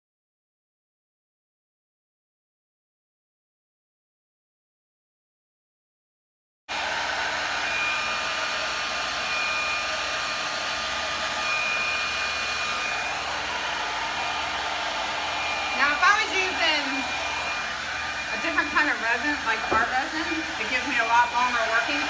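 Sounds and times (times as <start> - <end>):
blow dryer running: 6.7 - 22.0.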